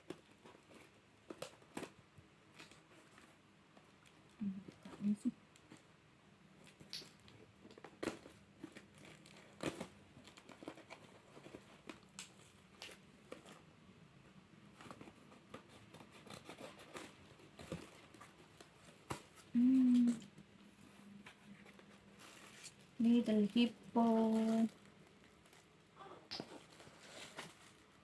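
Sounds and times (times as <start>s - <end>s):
packaging crinkling and rustling: 6.6s - 13.7s, 21.1s - 28.0s.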